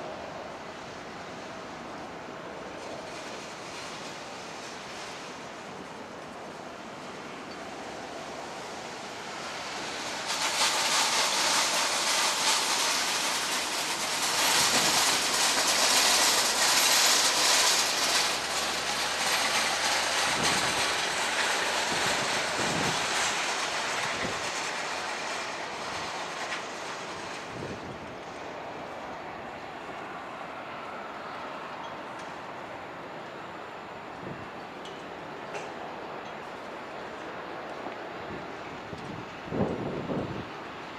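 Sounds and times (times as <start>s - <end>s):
jet engines at takeoff: 0.0s - 40.9s.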